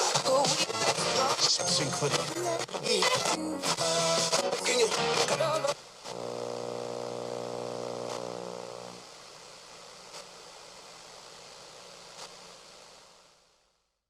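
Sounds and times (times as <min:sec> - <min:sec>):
radio static hiss: 0:00.0 - 0:14.0
radio buzzing tone: 0:06.1 - 0:09.1.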